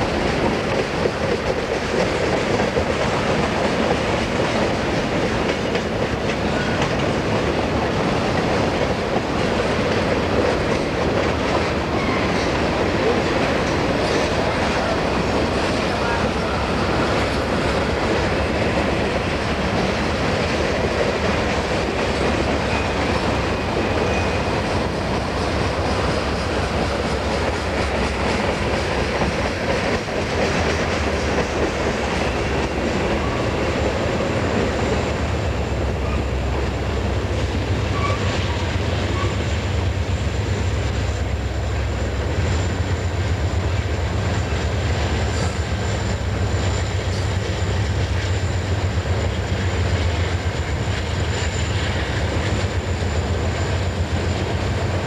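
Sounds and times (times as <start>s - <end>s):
train cars rolling on rails: 0.0s - 55.0s
high wheel squeal: 11.9s - 19.3s, 22.1s - 28.1s, 37.7s - 39.6s.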